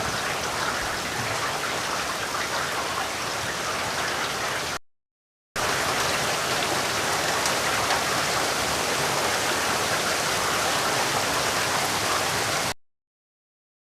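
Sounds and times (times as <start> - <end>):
rain falling steadily: 0.0 - 4.8, 5.6 - 12.8.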